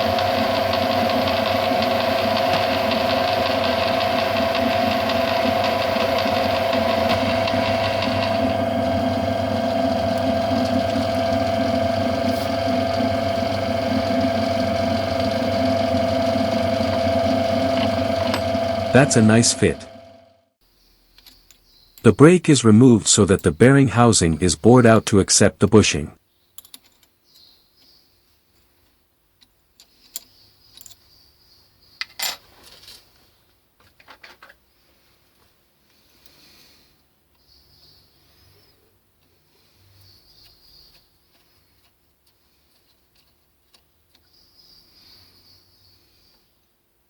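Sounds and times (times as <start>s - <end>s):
metal lathe whining: 0.0s - 20.2s.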